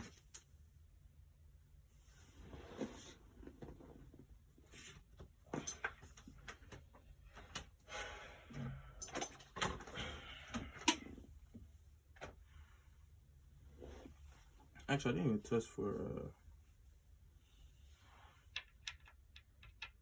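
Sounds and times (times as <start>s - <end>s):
tools clicking and knocking: 18.5s - 20.0s.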